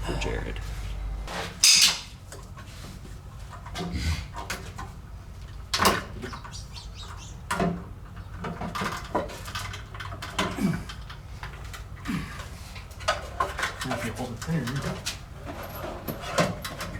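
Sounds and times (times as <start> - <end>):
plumbing knocks and clatter: 1.3 - 6.6, 7.2 - 16.9
bird low calls: 5.9 - 8.4.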